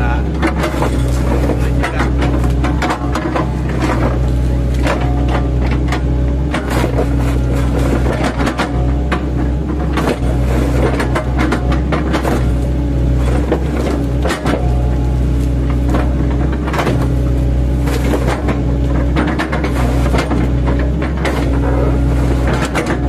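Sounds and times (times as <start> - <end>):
excavator engine running: 0.0 - 23.0.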